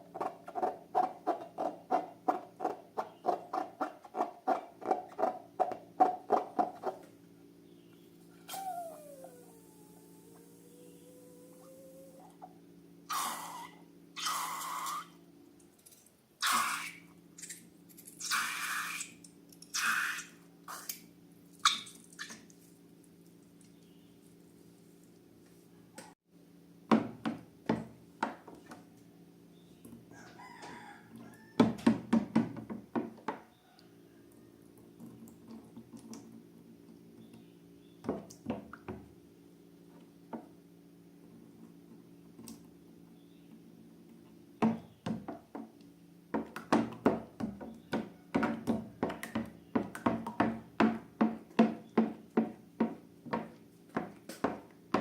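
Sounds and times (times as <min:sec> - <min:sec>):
low steady hum: 0:04.8 - 0:18.3.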